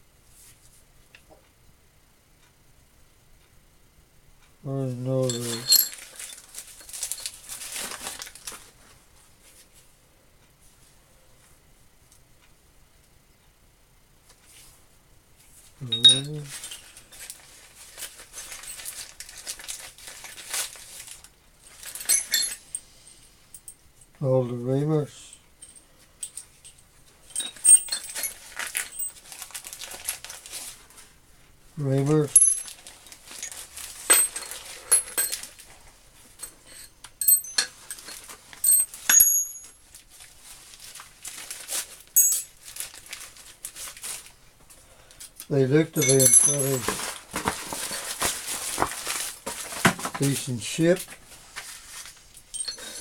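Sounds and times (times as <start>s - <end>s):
metal tools clinking: 5.1s - 8.5s, 15.8s - 23.8s, 25.6s - 30.6s, 32.1s - 35.7s, 36.3s - 40.0s, 42.1s - 43.0s, 45.1s - 51.2s, 52.4s - 53.0s
plastic packaging crinkling: 5.3s - 8.9s, 16.4s - 22.1s, 27.9s - 31.1s, 32.2s - 35.8s, 39.8s - 44.4s, 46.5s - 52.3s.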